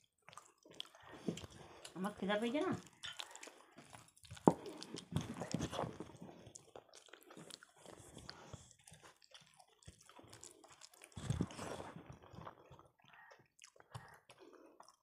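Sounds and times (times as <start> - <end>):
people chewing and eating: 0.0 - 15.0
mouth smacks and clicks: 8.9 - 15.0.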